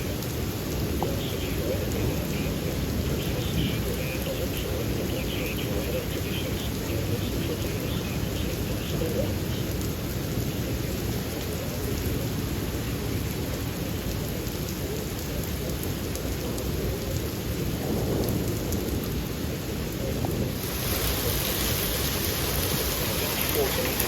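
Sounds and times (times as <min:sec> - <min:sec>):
thunder rumbling: 0:00.0 - 0:11.3, 0:16.6 - 0:24.0
heavy rain: 0:00.0 - 0:24.0.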